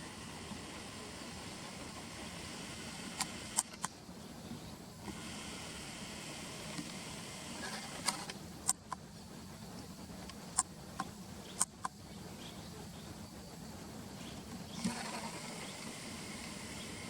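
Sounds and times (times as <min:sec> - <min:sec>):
swallows calling: 0:14.2 - 0:17.0.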